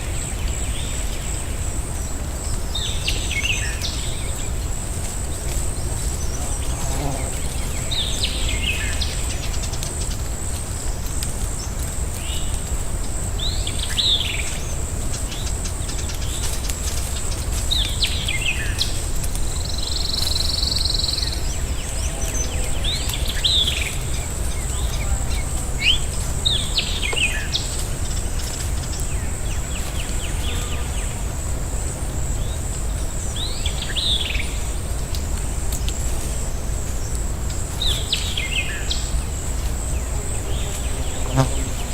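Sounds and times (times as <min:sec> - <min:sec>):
constant low rumble: 0:00.0 - 0:41.9.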